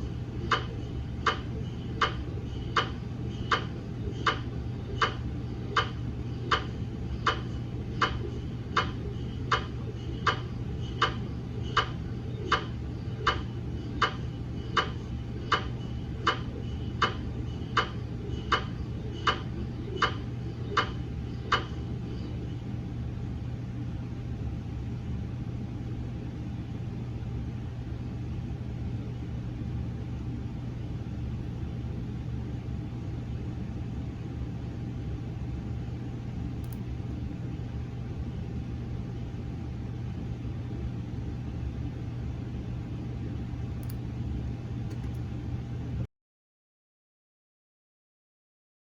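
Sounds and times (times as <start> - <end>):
mri scanner knocking: 0.0 - 21.8
steady low hum: 0.0 - 46.1.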